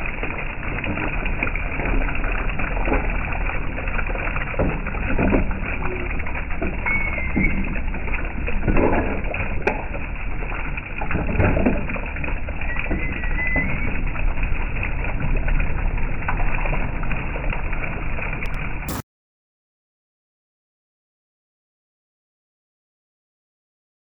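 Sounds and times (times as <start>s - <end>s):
water flowing and splashing: 0.0s - 19.0s
bird call: 12.7s - 14.0s.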